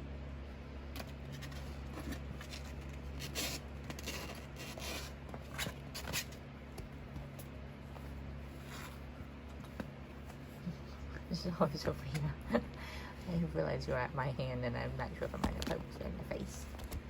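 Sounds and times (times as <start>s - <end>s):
kittens scuffling and scratching: 0.9s - 11.9s.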